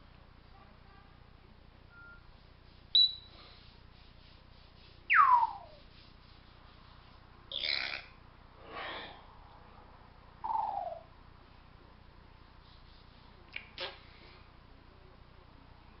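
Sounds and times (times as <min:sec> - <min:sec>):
parrot whistling: 0:03.0 - 0:03.3, 0:05.1 - 0:05.8.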